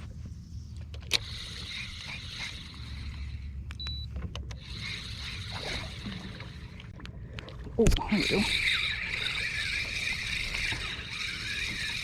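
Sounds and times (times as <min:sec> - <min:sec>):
fishing reel whirring: 0:01.1 - 0:03.6, 0:04.6 - 0:06.8, 0:08.0 - 0:12.0
fishing reel click: 0:08.2 - 0:12.0.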